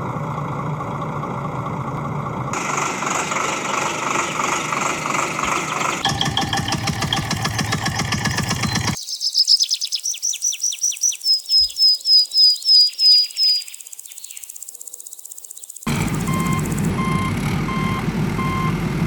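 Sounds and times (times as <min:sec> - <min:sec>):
vehicle engine running: 0:00.0 - 0:09.0, 0:15.9 - 0:19.0
bird chirping: 0:03.6 - 0:18.7.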